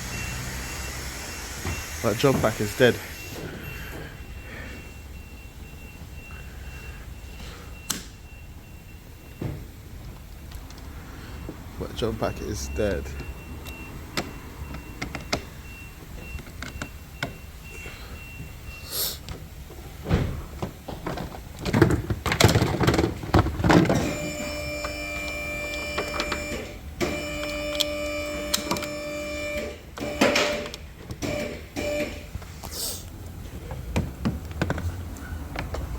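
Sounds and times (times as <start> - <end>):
high beep: 1.6 - 9.6, 11.2 - 16.4
clunks and rattles: 19.4 - 25.0, 33.5 - 35.9.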